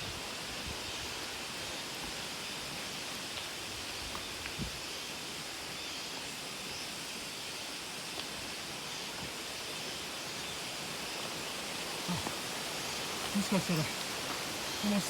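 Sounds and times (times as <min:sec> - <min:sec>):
waterfall rushing: 0:10.6 - 0:15.0.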